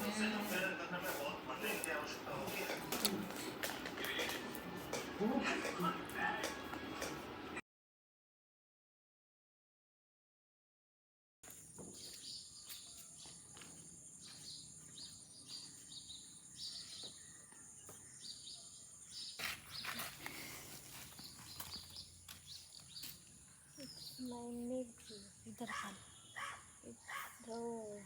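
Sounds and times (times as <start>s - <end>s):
bird chirps: 11.9s - 20.2s, 20.9s - 27.8s.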